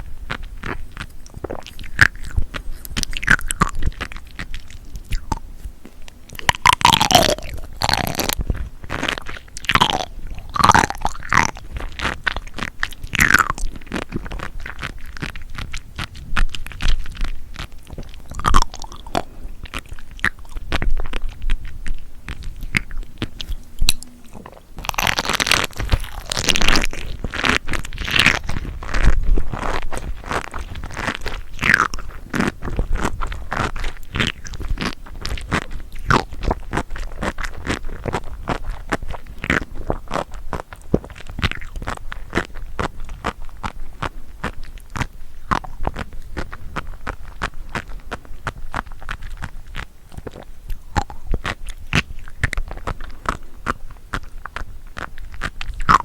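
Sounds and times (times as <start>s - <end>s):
crunchy chewing of seafood: 0.0s - 56.0s
wet mouth smacks: 37.0s - 56.0s.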